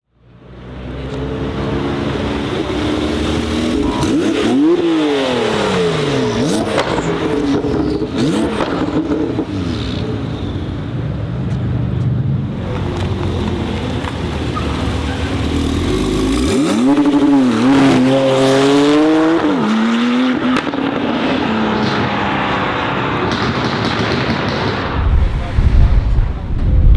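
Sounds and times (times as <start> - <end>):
car engine revving: 1.2 - 10.2, 24.4 - 26.9.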